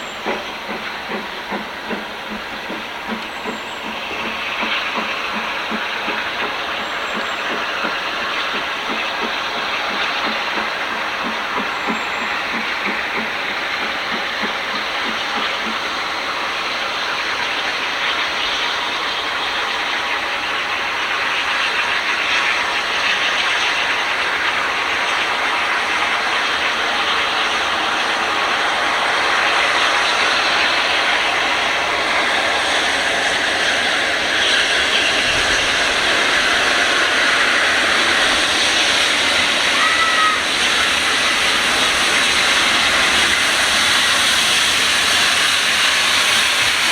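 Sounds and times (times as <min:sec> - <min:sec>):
train rushing by on rails: 0:00.0 - 0:46.9.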